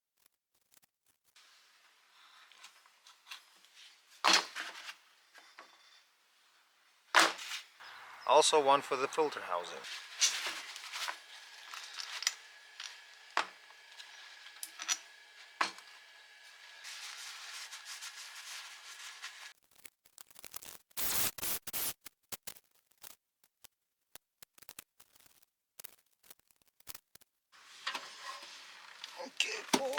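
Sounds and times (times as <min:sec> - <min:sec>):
faint steady hiss: 0:01.4 - 0:19.5, 0:27.6 - 0:29.9
rubbing on engine parts: 0:08.6 - 0:19.5, 0:27.6 - 0:29.9.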